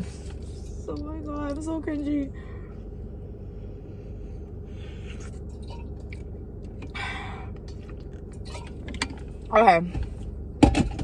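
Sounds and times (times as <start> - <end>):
low hum: 0.0 - 11.0
soft chewing: 4.9 - 9.4.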